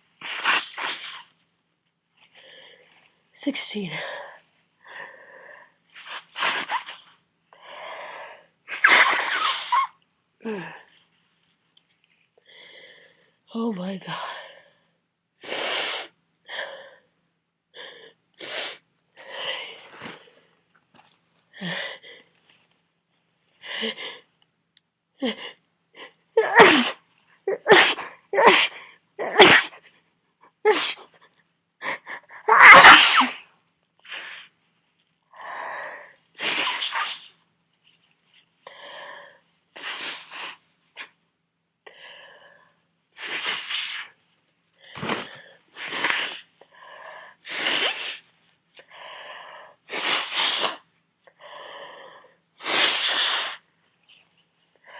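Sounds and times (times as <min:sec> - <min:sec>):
person sneezing: 0:00.2 - 0:01.3, 0:06.0 - 0:07.1, 0:08.7 - 0:10.8, 0:26.4 - 0:29.8, 0:30.7 - 0:31.1, 0:32.4 - 0:33.4, 0:36.4 - 0:37.3, 0:43.2 - 0:44.1, 0:45.0 - 0:46.5, 0:47.4 - 0:48.2, 0:49.9 - 0:50.8, 0:52.6 - 0:53.6.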